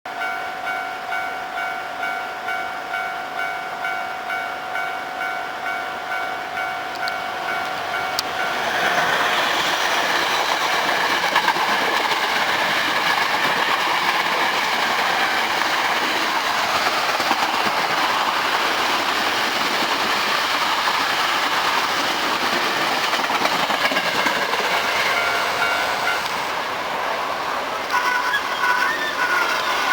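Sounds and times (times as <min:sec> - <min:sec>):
electric trains passing: 0:00.1 - 0:29.9
railway crossing alarm ringing: 0:00.1 - 0:29.9
wheels clattering over rail joints: 0:07.7 - 0:26.4.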